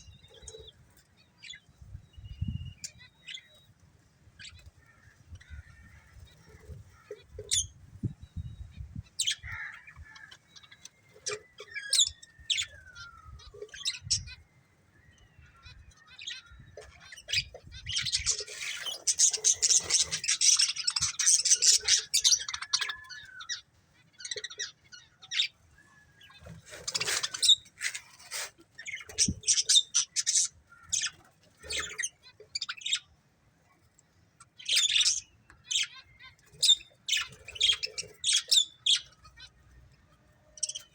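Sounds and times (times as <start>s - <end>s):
budgerigars chirping and chattering: 0.0s - 3.7s, 4.4s - 40.9s.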